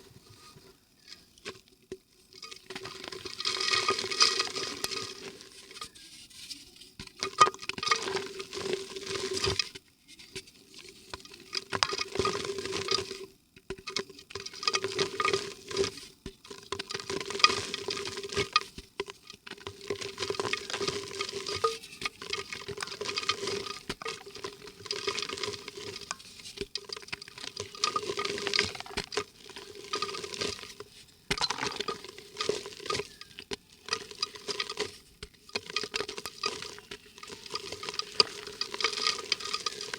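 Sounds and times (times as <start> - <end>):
mud crackling in water: 19.4 - 39.9.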